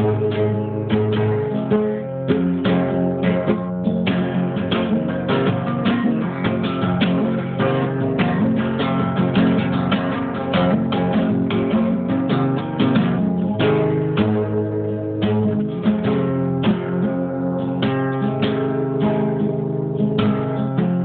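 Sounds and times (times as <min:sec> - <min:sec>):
acoustic guitar strumming: 0:00.0 - 0:21.0.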